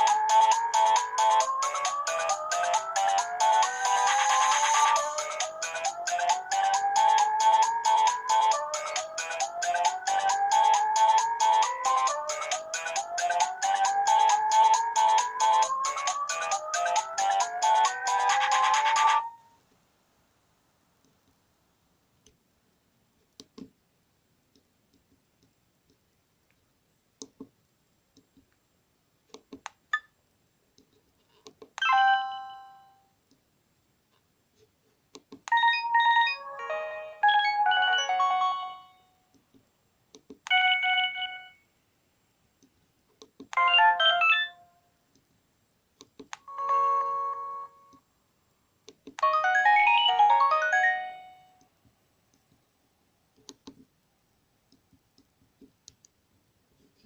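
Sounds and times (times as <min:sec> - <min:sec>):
polyphonic phone ringtones: 0:35.5 - 0:39.0, 0:40.5 - 0:41.6, 0:43.6 - 0:44.6, 0:46.5 - 0:47.9, 0:49.2 - 0:51.5.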